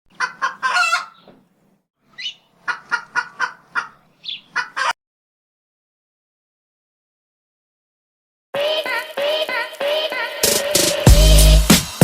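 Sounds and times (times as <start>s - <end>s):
chicken squawking and clucking: 0.1s - 1.3s, 2.2s - 5.0s.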